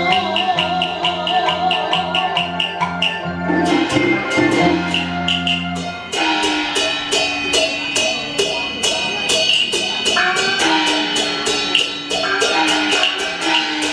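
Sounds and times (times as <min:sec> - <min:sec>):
opera melody with bending notes: 0:00.0 - 0:07.4
clicking percussion beat: 0:00.0 - 0:13.9.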